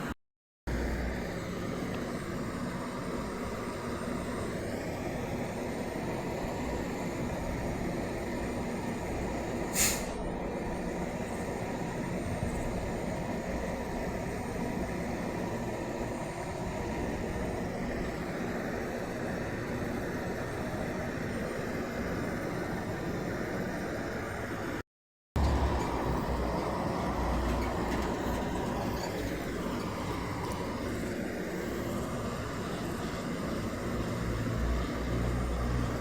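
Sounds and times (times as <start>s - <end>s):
air brakes hissing: 9.6s - 10.4s
truck diesel engine rumbling: 25.4s - 36.0s.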